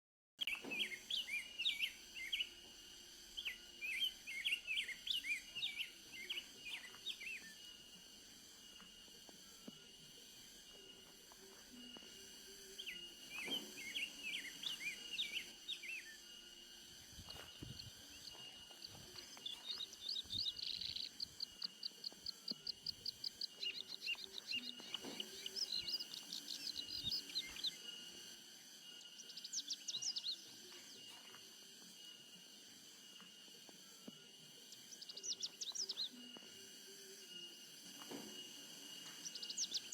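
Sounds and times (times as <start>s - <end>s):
birds chirping and singing: 0.4s - 7.8s, 12.7s - 16.4s, 17.0s - 28.4s, 29.0s - 31.1s, 34.6s - 37.9s, 38.8s - 39.9s.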